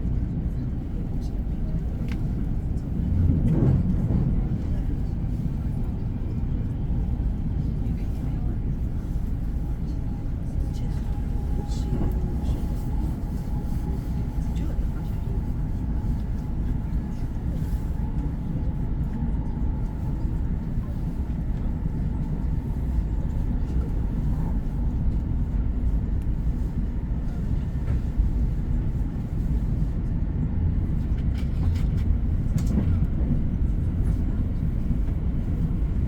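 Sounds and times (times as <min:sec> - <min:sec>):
moving train rumble: 0:00.0 - 0:36.0.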